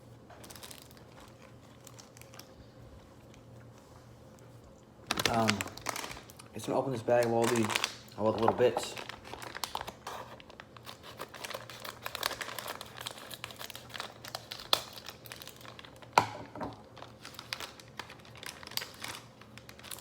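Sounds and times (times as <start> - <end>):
plastic wrappers crinkling: 0.4 - 3.5, 5.0 - 20.0
packet being torn open: 5.1 - 20.0.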